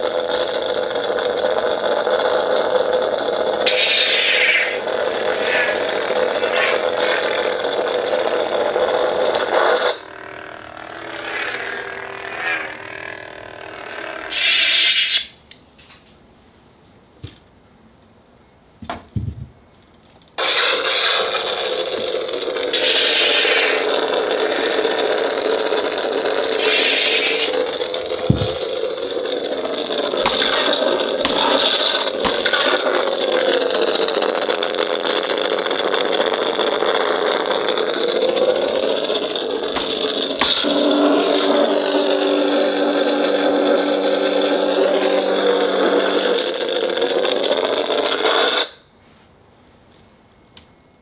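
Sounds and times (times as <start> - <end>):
lightsaber clash hits: 30.3 - 32.9, 39.8 - 42.2.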